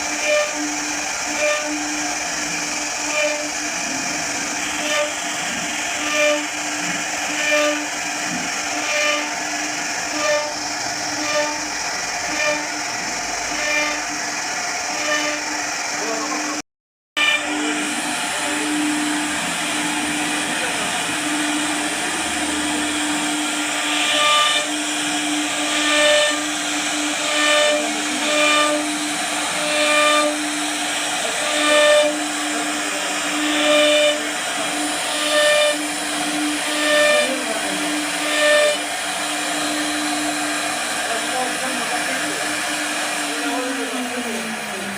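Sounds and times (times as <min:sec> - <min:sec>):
machine motor hum: 0:00.0 - 0:16.6, 0:17.2 - 0:44.9
short whining tones: 0:00.0 - 0:16.6.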